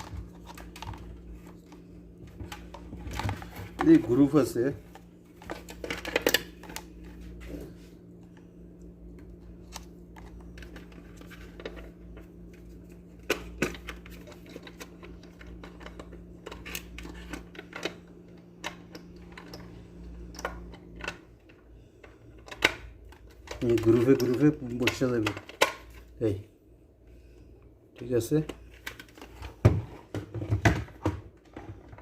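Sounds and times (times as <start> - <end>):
steady low hum: 0.0 - 32.0
plastic parts clicking and tapping: 13.2 - 26.1.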